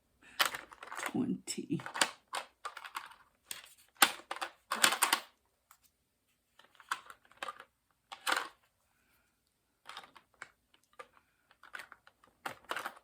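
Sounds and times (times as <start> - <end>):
craft supplies clicking and rustling: 0.4 - 5.4, 6.6 - 8.7, 9.8 - 13.0.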